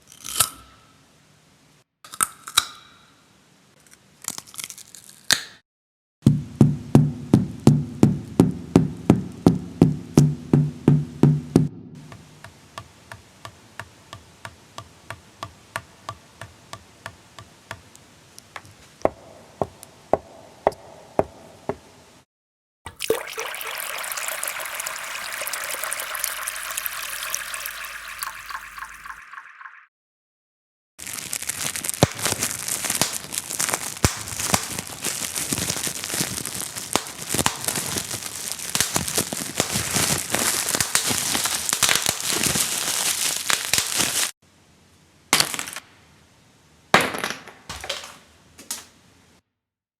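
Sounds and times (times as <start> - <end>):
sharp knocks: 6.2 - 12.6, 18.6 - 21.9.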